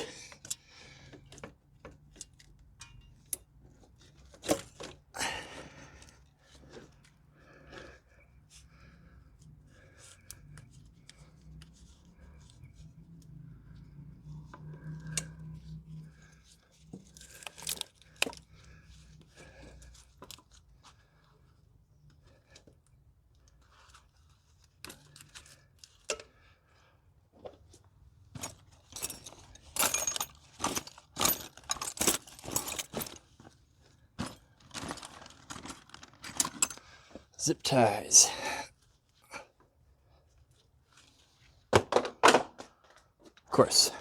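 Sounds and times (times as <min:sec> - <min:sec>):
tools clicking and scraping: 0:00.0 - 0:05.0, 0:16.8 - 0:18.5, 0:23.7 - 0:26.4
plastic connectors and wiring handled: 0:17.0 - 0:18.5, 0:34.2 - 0:37.3.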